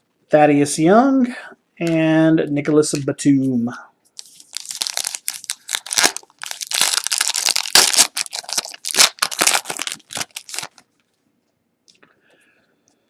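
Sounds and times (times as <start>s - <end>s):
cards shuffling and rustling: 4.2s - 10.8s.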